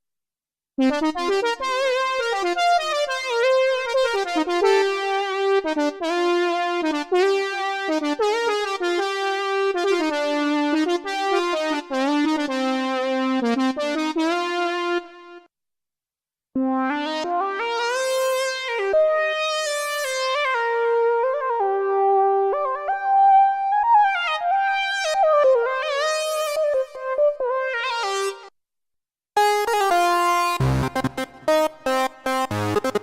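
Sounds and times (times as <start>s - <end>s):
synthesizer playing chords and melody: 29.4s - 33.0s.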